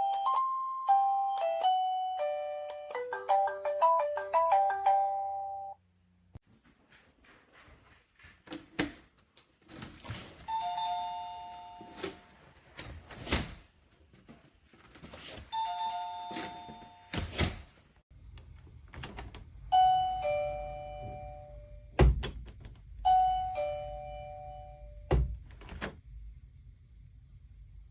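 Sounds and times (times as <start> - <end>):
two-note door chime: 19.7 - 22.0, 23.1 - 25.2.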